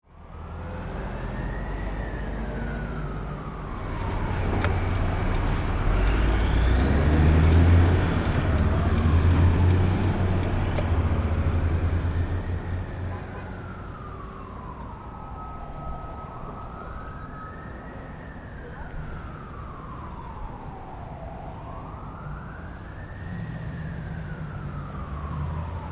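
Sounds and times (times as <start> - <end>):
low vehicle rumble: 0.0 - 13.4
siren wailing: 0.6 - 25.9.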